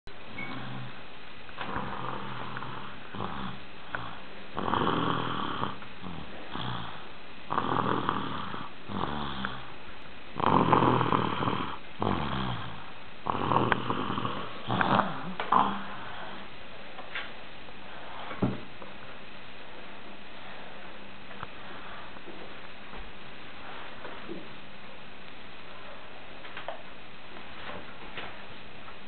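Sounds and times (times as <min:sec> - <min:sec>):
person snoring: 0:00.3 - 0:01.0, 0:01.6 - 0:09.8, 0:10.4 - 0:16.5.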